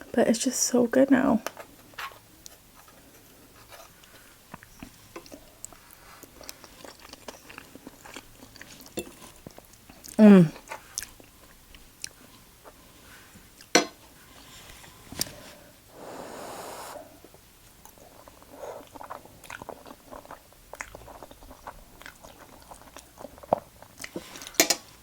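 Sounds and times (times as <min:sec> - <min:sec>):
person chewing food: 0:02.4 - 0:13.8, 0:17.1 - 0:24.9
short breathy rush: 0:15.3 - 0:17.2.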